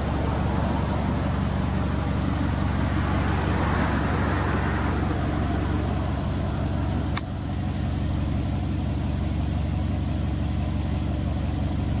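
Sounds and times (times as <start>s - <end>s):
car engine idling: 0.0s - 12.0s
sharp click: 7.1s - 7.3s.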